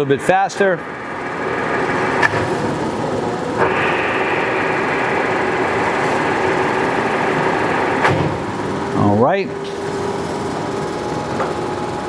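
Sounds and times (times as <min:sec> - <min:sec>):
lathe whirring with gear whine: 0:00.0 - 0:12.0
lathe click: 0:00.9 - 0:09.0.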